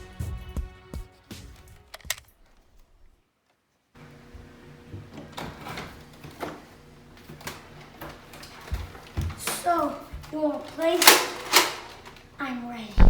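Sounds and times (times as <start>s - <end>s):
music: 0.0s - 2.2s.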